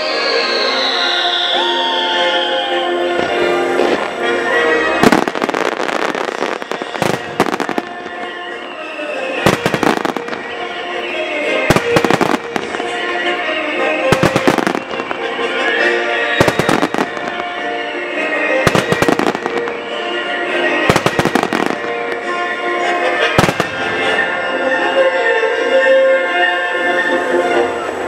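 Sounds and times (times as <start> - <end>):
music on loudspeakers: 0.0 - 28.0
fireworks bangs: 3.1 - 24.9.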